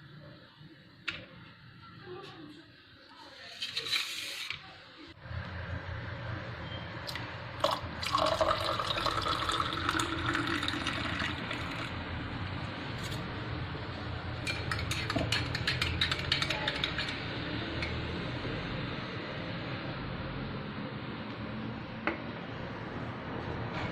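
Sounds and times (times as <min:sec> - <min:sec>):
liquid pouring into container: 0:07.1 - 0:12.0.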